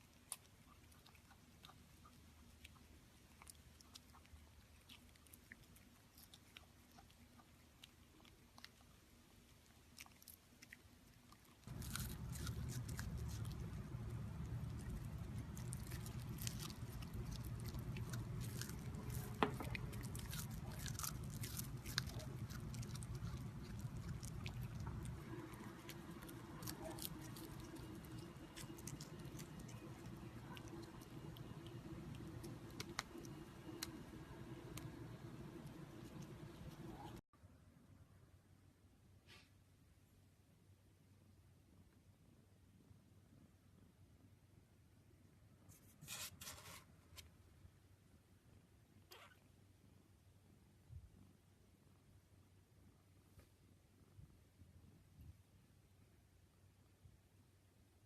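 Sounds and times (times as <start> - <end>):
animal chewing and crunching: 0.0 - 37.2
low hum: 11.7 - 38.0.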